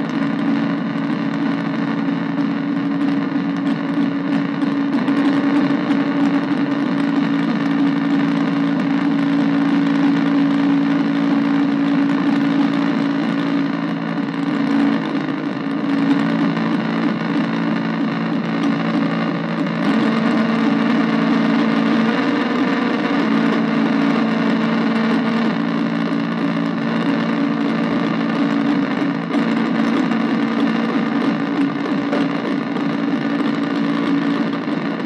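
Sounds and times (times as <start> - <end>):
buzzing synthesizer drone: 0.0 - 35.0.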